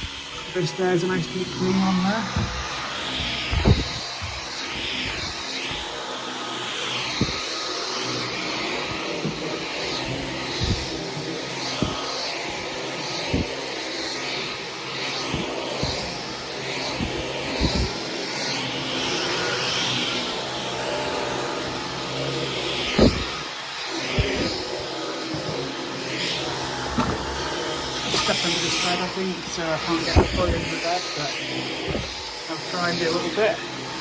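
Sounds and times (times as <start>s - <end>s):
vacuum cleaner motor whine: 0.0s - 34.0s
vacuum head knocking: 2.2s - 6.0s, 7.1s - 7.6s, 8.8s - 13.6s, 15.1s - 16.3s, 16.9s - 18.0s, 22.9s - 23.4s, 24.1s - 25.7s, 26.8s - 27.5s, 30.0s - 30.8s, 31.8s - 32.2s.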